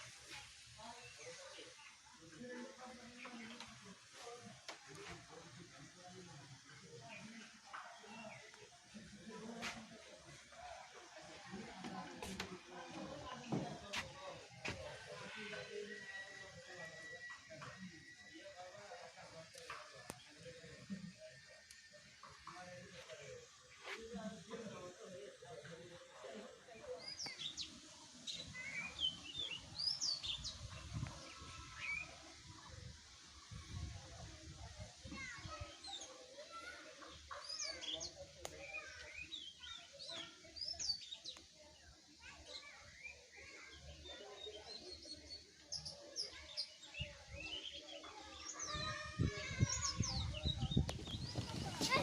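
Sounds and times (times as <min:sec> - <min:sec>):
songbirds chirping: 0:00.0 - 0:52.0
birds chirping: 0:43.8 - 0:52.0.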